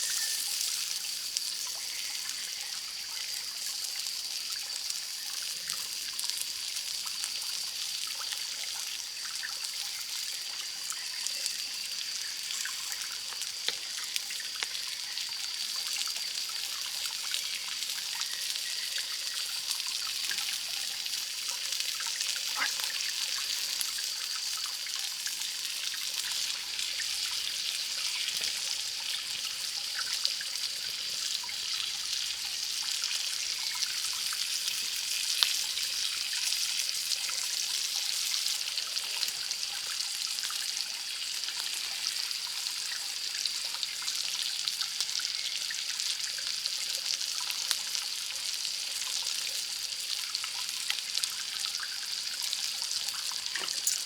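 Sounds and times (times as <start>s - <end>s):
water trickling: 7.4s - 44.1s, 50.3s - 54.0s.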